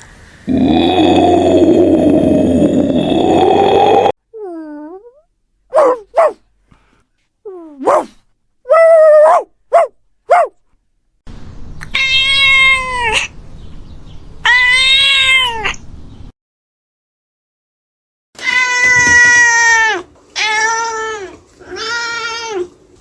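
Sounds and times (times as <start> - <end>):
cats meowing: 11.9 - 13.3, 14.5 - 15.8, 18.4 - 22.8.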